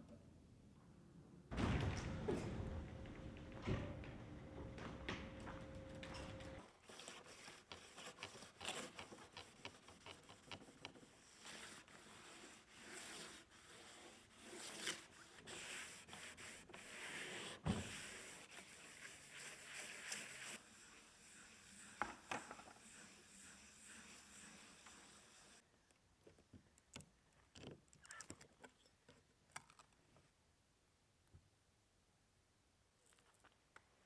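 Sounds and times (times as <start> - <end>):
rubbing and scraping on a surface: 4.6 - 25.6.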